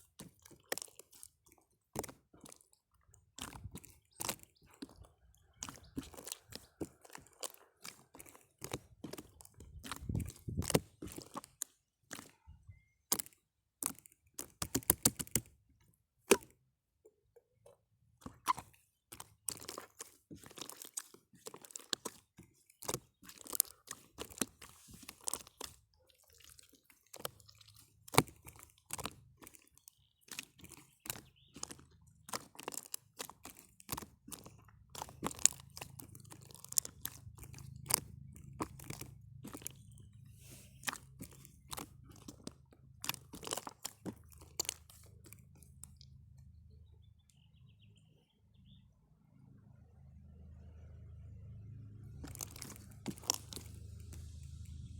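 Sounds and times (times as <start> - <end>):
sharp clicks and crunches: 0.0 - 16.6, 17.6 - 46.4, 52.1 - 54.9
faint low hum: 45.6 - 54.9.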